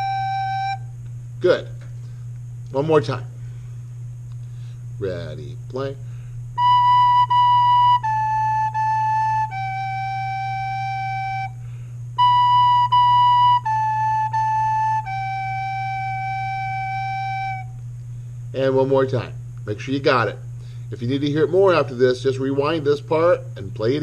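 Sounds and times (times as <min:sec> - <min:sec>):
recorder playing: 0:00.0 - 0:00.9, 0:06.6 - 0:17.8
faint electrical hum: 0:00.0 - 0:24.0.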